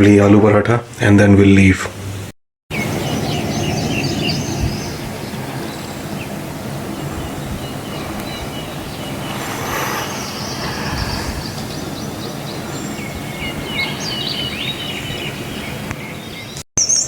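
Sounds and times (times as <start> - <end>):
birds chirping: 2.7 - 17.0
steady rushing noise: 2.9 - 14.2.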